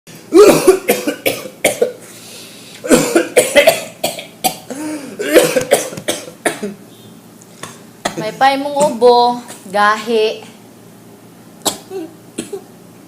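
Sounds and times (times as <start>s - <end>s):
person hacking coughs: 0.3s - 2.0s, 2.8s - 6.8s, 7.6s - 9.6s, 11.6s - 12.7s.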